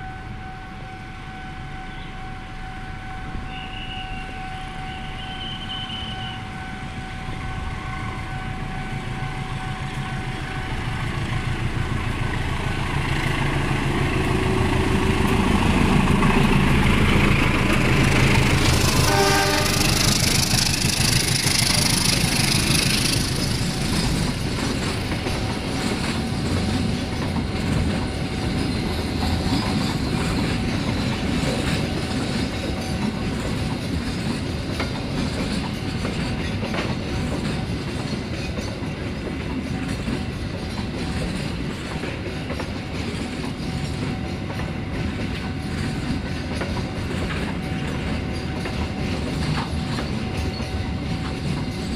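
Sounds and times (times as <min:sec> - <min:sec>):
train horn: 0:00.0 - 0:11.1, 0:17.6 - 0:23.2
train passing: 0:00.0 - 0:51.9
wheel clatter over rail joints: 0:11.0 - 0:51.9.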